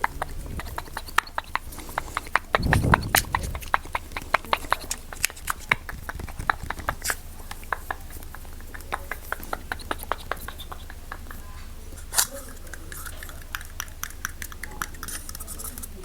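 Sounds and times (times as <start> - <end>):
low rubbing rumble: 0.2 - 1.0, 2.5 - 4.0.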